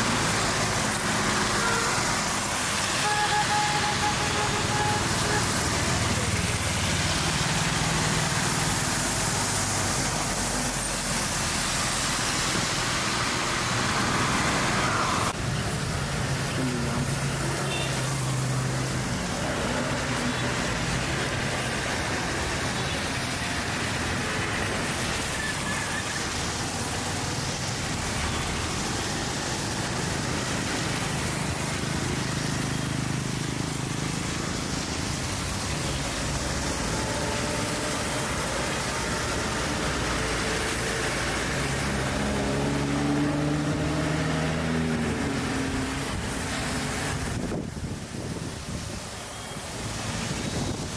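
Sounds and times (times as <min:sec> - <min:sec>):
road traffic roar: 0:00.0 - 0:50.9.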